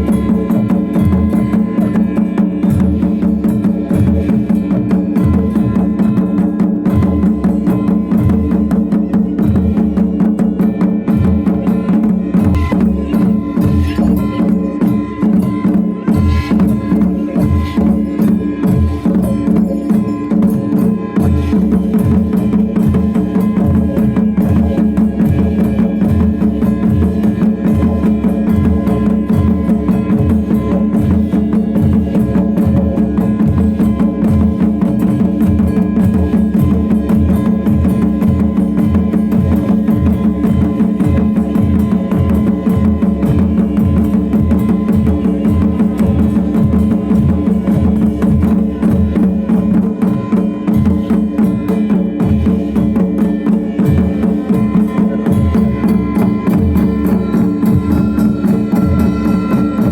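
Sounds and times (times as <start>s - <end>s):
steady drum beat: 0.0s - 59.9s
sustained held tones: 54.5s - 59.9s.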